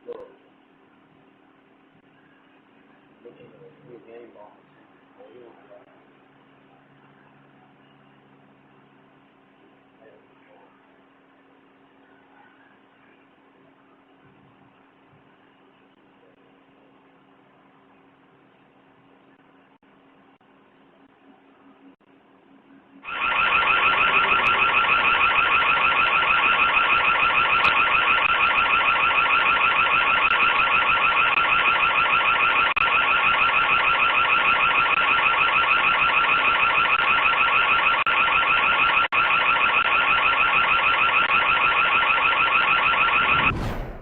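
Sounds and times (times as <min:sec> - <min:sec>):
electronic alarm siren warbling: 0:23.0 - 0:44.0.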